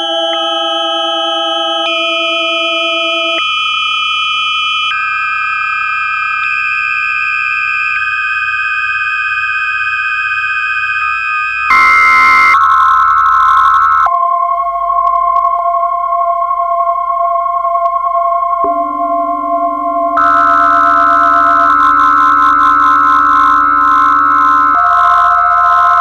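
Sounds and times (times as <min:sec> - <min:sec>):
dense buzzing tone cluster: 0:00.0 - 0:26.0
electronic sine tones: 0:00.0 - 0:26.0
low drone: 0:14.1 - 0:26.0.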